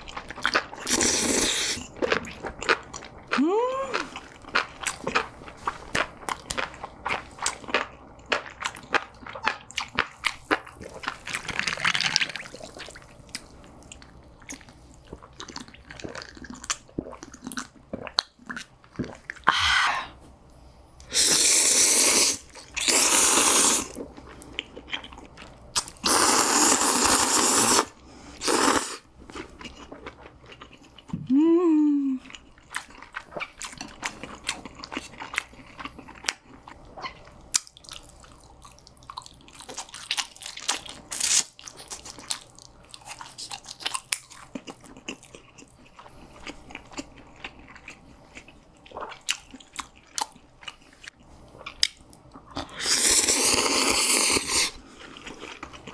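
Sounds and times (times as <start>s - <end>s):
chewing with crunches: 0.0s - 19.5s, 22.4s - 27.8s, 28.4s - 31.2s, 32.2s - 55.9s
person humming: 3.4s - 4.1s, 31.2s - 32.2s
loud slurping: 21.1s - 24.0s, 26.0s - 29.0s, 52.7s - 54.8s.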